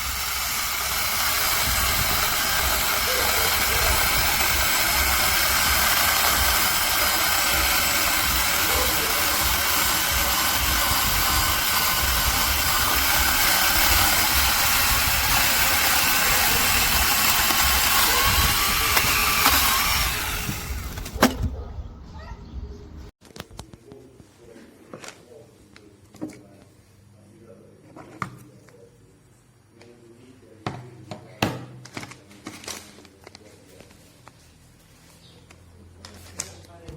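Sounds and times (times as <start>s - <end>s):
mini chainsaw whining: 0.0s - 21.5s.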